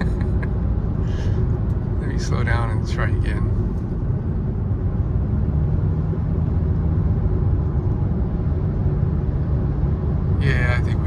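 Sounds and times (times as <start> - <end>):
car engine and road noise: 0.0 - 11.0.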